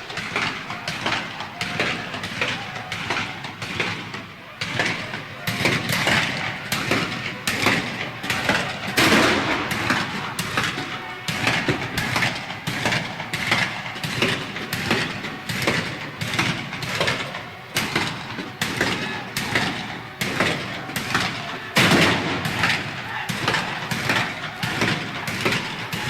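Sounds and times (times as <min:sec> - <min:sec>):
continuous noisy din: 0:00.0 - 0:26.0
musket and rifle fire: 0:08.9 - 0:10.7.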